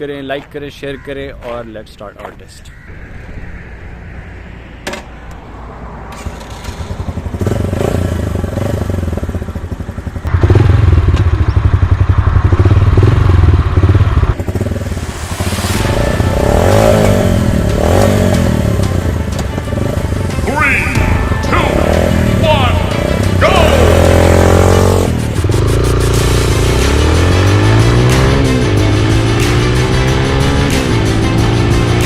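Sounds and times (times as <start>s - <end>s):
motorcycle engine accelerating: 6.1s - 20.4s, 21.0s - 32.0s.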